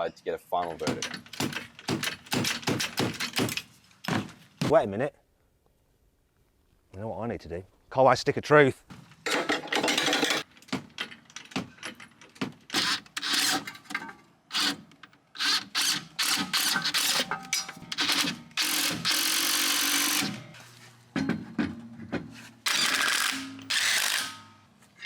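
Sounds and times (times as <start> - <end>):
tool clanks and rattles: 0.6 - 4.7, 9.2 - 25.0.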